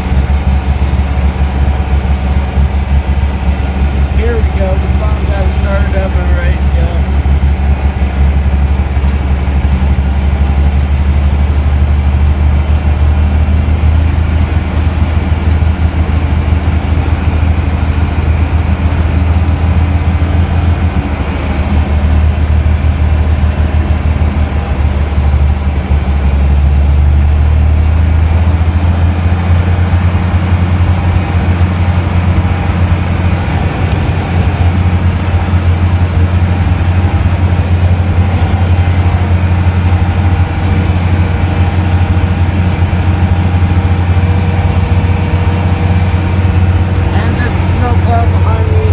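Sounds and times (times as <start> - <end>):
vehicle engine droning: 0.0 - 48.9.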